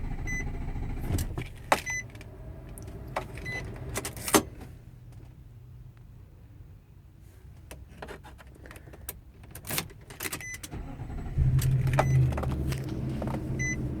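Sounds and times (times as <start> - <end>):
dashboard warning chime: 11.0 - 14.0.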